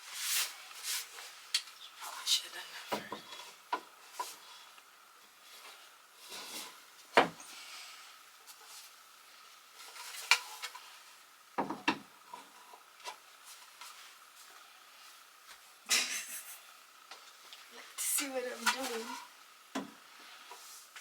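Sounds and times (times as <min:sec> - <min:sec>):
sharp knocks on wood: 0:11.6 - 0:12.0.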